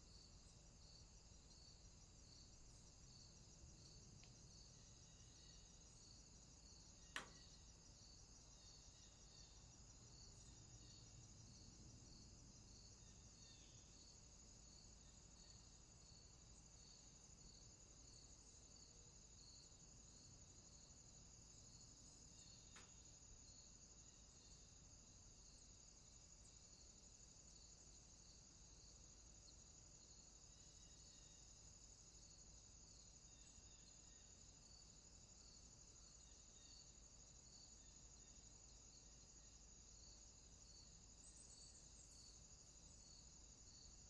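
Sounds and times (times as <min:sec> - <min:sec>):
insects chirring: 0:00.0 - 0:44.0
faint click: 0:04.2 - 0:04.4, 0:07.1 - 0:07.5, 0:22.7 - 0:23.0.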